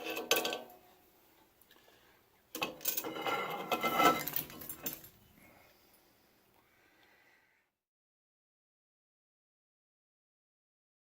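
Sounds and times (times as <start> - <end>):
steel pieces clattering on metal: 2.6 - 5.2.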